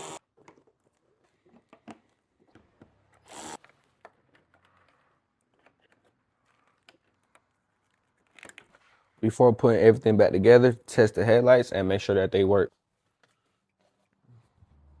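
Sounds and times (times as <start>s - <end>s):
plastic parts handled: 0.4s - 9.2s.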